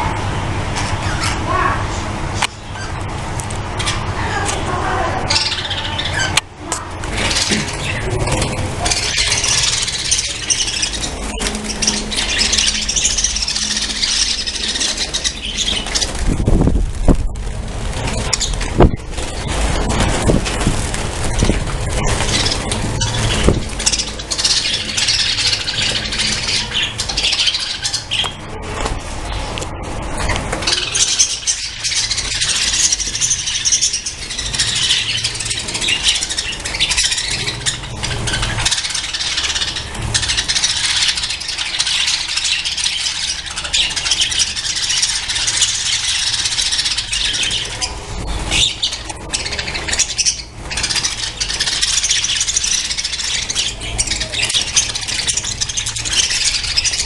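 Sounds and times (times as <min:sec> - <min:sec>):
budgerigars chattering and squawking: 0:00.6 - 0:03.1, 0:03.7 - 0:29.5, 0:30.1 - 0:57.0
low rumble: 0:06.5 - 0:27.4.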